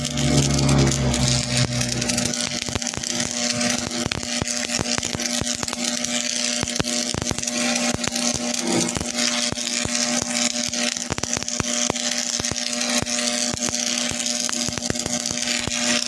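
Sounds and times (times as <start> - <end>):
arc welding crackling and hissing: 0.0 - 16.0
steady electric hum: 0.0 - 16.0.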